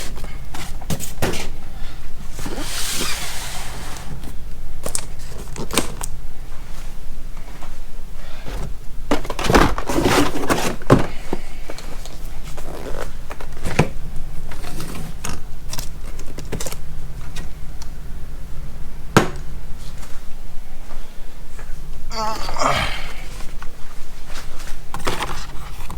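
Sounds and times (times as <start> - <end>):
knocks and thunks of boxes: 0.0 - 1.6, 8.4 - 11.7, 13.0 - 15.2, 19.1 - 19.5
packaging rustling: 8.5 - 17.4.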